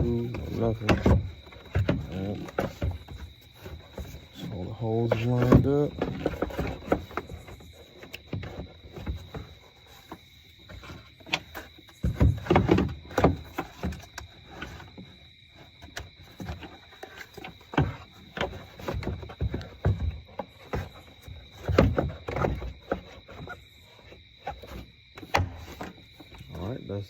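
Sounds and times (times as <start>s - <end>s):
plastic air box knocking and rattling: 0.0s - 23.6s, 24.5s - 26.7s.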